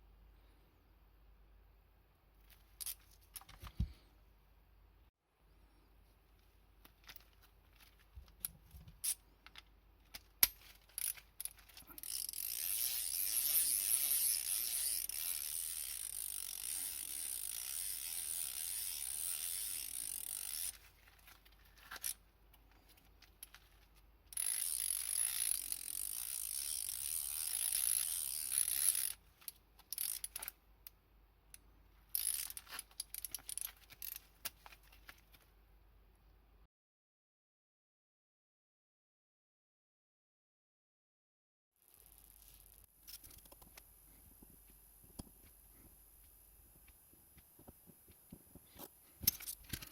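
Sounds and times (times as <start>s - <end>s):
ratchet clicking: 10.4s - 20.8s, 24.3s - 29.2s, 29.8s - 30.6s, 32.1s - 34.2s.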